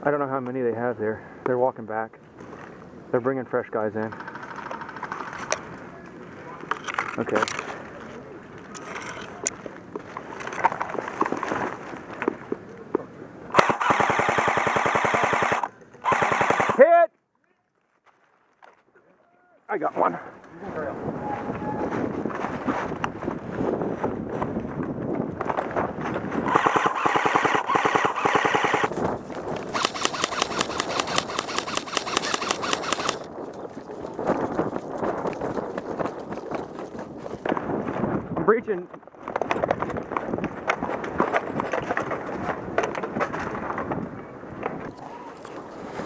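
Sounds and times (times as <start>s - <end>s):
airsoft gun full auto rattle: 4.1s - 5.6s, 13.5s - 16.8s, 26.5s - 29.0s, 29.6s - 33.6s
airsoft gun clicks and snaps: 29.6s - 33.3s.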